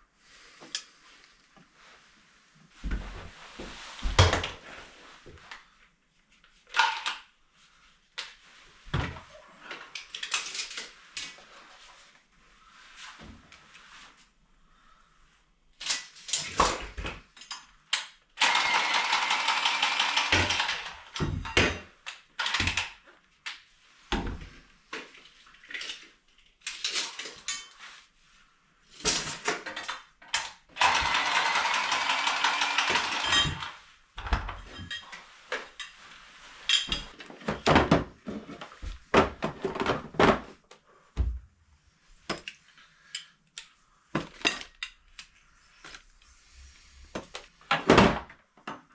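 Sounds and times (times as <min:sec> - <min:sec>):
small power tool whining: 0:18.4 - 0:21.2, 0:30.8 - 0:33.8
tools clattering and knocking: 0:29.0 - 0:36.0, 0:36.7 - 0:40.5.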